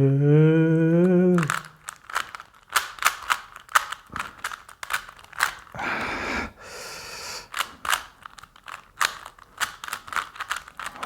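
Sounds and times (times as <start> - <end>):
puzzle cube clicking turns: 0.7 - 11.0
person breathing out: 5.7 - 7.7.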